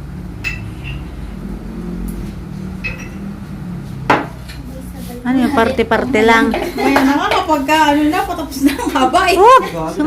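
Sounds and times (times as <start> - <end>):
steady low hum: 0.0 - 8.9
tableware clinking: 0.4 - 1.1, 2.8 - 3.3.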